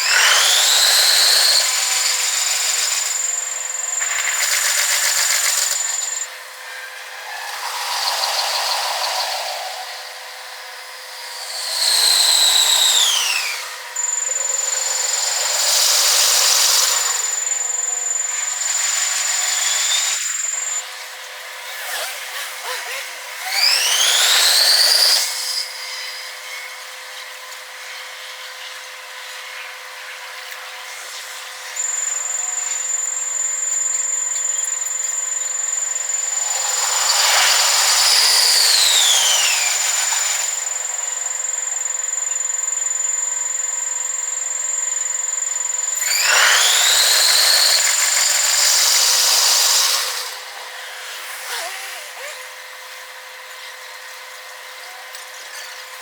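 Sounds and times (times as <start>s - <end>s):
electric train motors whining: 0.0s - 20.8s, 23.4s - 26.7s, 31.8s - 53.6s.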